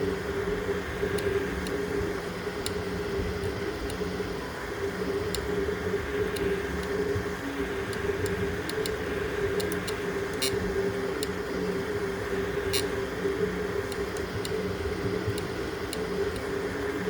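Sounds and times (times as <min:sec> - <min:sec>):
three-d printer humming: 0:00.0 - 0:17.0
faint ticks: 0:05.1 - 0:07.0, 0:07.8 - 0:13.0, 0:13.8 - 0:16.6.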